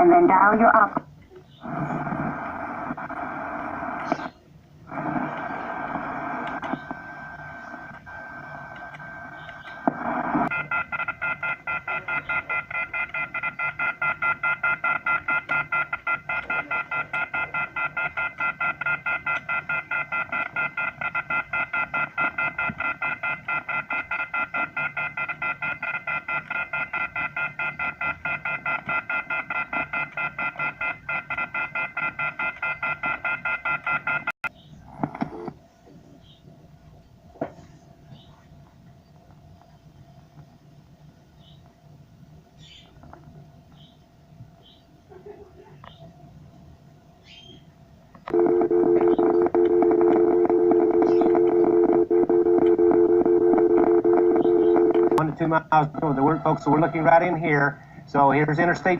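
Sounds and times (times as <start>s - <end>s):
telephone off-hook warning tone: 10.0s - 34.3s, 48.3s - 58.8s.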